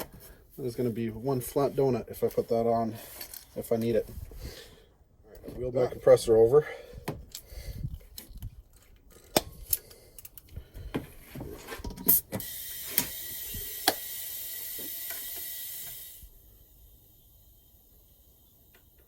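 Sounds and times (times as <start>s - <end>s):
air hose being handled: 1.4s - 5.6s, 7.0s - 16.3s
compressed air hissing: 12.1s - 19.0s.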